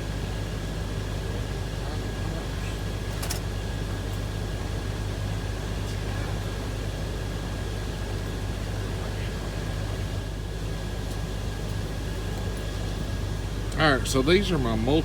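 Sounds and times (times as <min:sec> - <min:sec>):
thin steady whine: 0:00.0 - 0:15.0.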